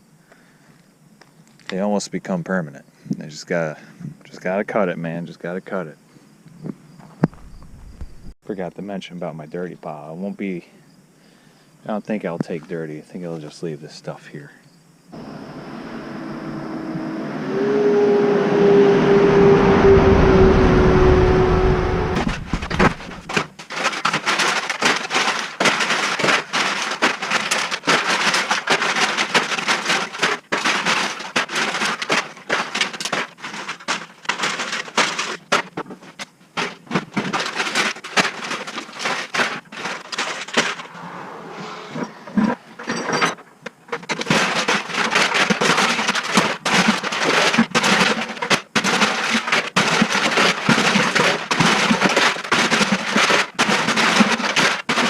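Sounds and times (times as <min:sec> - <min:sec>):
motor humming: 0:15.2 - 0:23.2
dense clattering and cracking: 0:19.8 - 0:41.0, 0:42.0 - 0:55.0.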